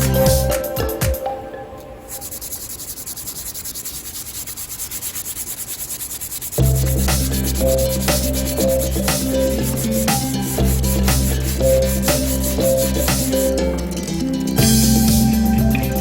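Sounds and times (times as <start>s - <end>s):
background music: 0.0s - 2.3s, 6.6s - 16.0s
hand sanding wood: 2.1s - 14.5s.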